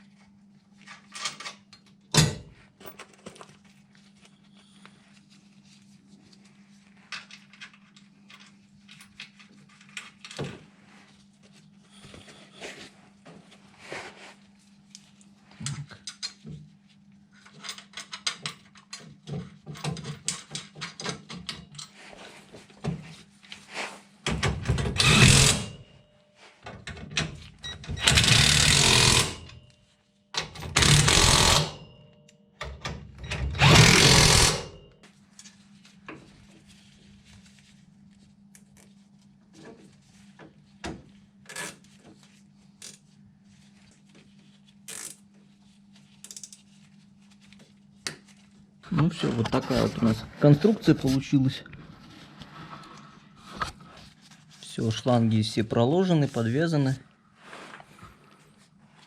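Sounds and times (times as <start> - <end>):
impact wrench bursts: 25.0 - 25.8, 28.0 - 29.5, 30.7 - 31.8, 33.6 - 34.8.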